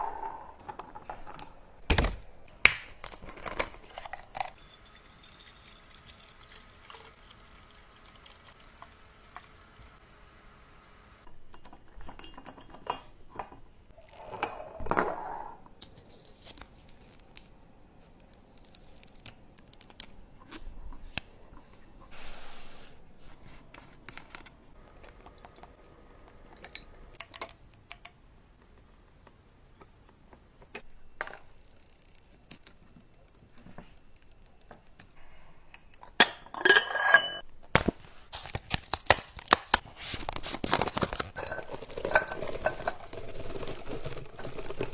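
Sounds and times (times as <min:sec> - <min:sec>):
plastic and glass clinks: 0:11.5 - 0:13.5
packaging rustling: 0:38.3 - 0:44.9.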